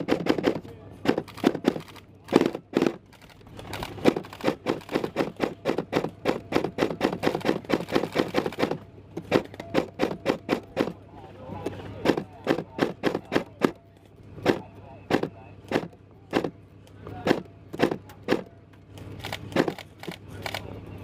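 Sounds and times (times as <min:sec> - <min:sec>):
airsoft gun firing: 0:04.0 - 0:10.9.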